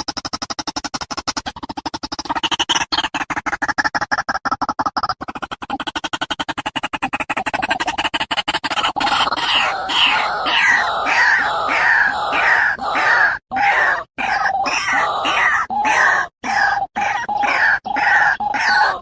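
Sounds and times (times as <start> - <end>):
fast pulsing clicks: 0.0 - 19.0
harsh animal calls: 8.6 - 19.0.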